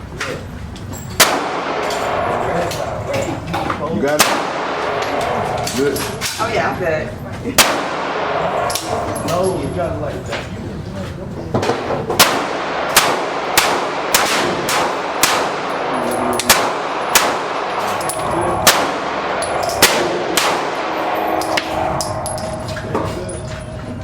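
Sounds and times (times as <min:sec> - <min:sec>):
gunshots: 0:01.2 - 0:02.4, 0:04.1 - 0:05.3, 0:07.6 - 0:09.0, 0:12.2 - 0:22.2.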